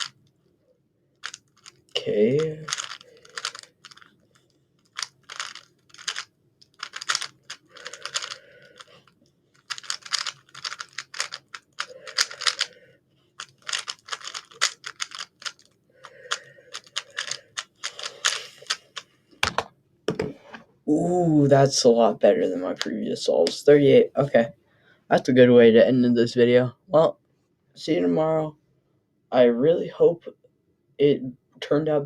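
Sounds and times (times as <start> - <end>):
puzzle cube clicking and rattling: 1.2 - 12.8, 13.4 - 19.0.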